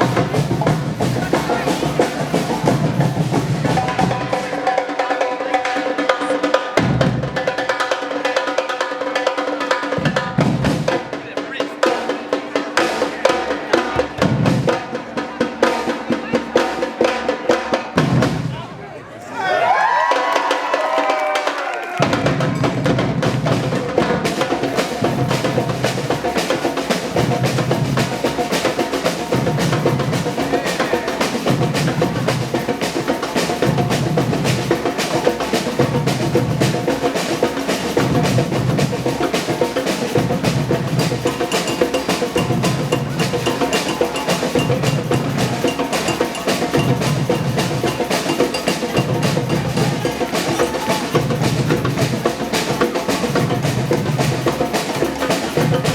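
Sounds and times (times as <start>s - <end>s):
snare drum rolls: 0.0s - 5.2s, 5.8s - 18.6s, 19.8s - 55.9s
deep bass drum beat: 42.4s - 52.7s.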